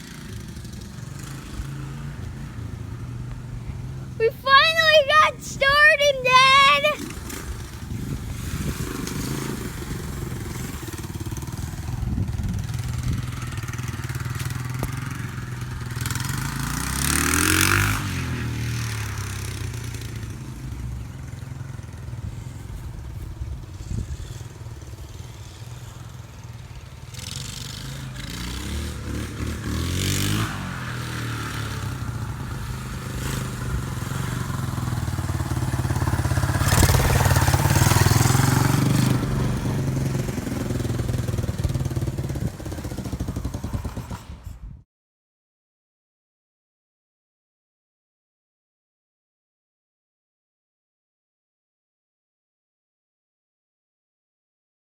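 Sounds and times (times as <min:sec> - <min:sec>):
motorcycle engine passing: 0:23.8 - 0:44.4.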